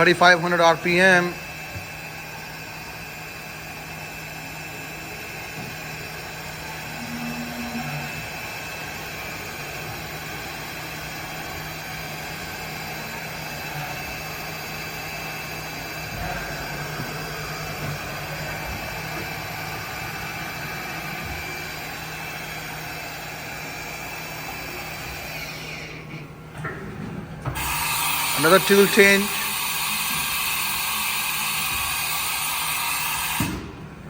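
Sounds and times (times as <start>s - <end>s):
machine spindle whine and hiss: 0.0s - 26.4s, 27.4s - 33.9s
low machine hum: 0.0s - 32.6s.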